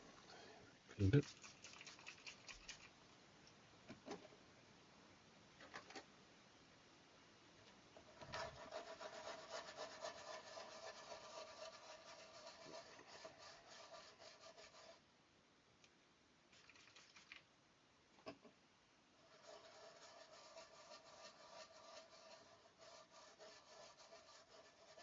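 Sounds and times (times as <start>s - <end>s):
hand scrubbing: 1.1s - 2.9s.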